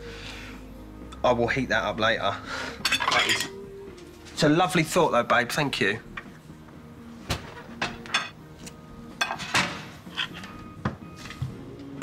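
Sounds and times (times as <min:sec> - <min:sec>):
cutlery and crockery clinking: 0:02.8 - 0:03.6, 0:07.8 - 0:08.4, 0:09.2 - 0:10.6.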